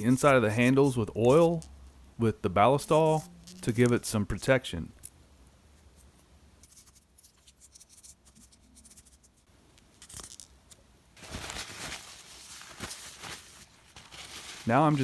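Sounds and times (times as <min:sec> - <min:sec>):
scratchy rustle: 0:11.2 - 0:15.0.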